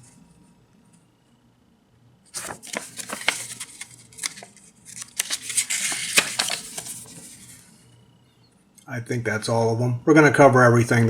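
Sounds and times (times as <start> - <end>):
paper pages rustling: 2.3 - 7.7.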